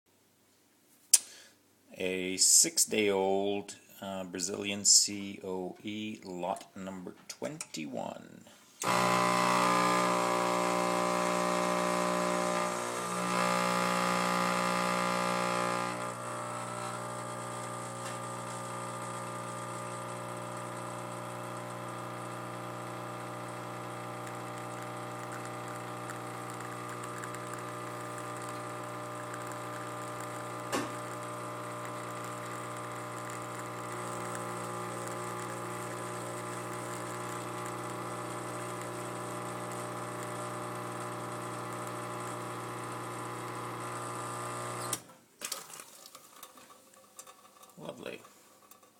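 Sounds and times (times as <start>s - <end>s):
espresso machine pump humming: 8.8s - 45.0s.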